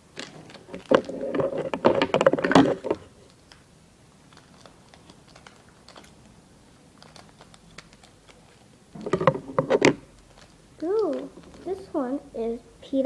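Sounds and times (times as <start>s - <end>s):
plastic packaging crinkling and tearing: 0.2s - 9.1s, 10.0s - 11.9s.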